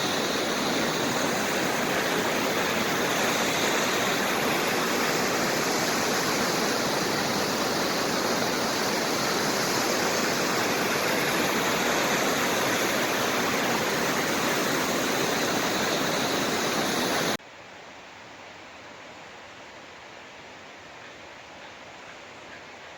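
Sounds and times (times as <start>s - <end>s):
mountain stream rushing: 0.0s - 17.4s
faint hiss: 0.0s - 22.9s.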